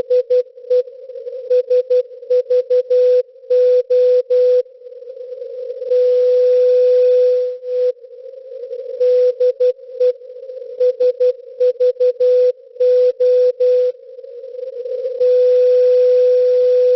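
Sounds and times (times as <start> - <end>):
receiver hiss: 0.0 - 16.9
morse code tone: 10.8 - 13.9.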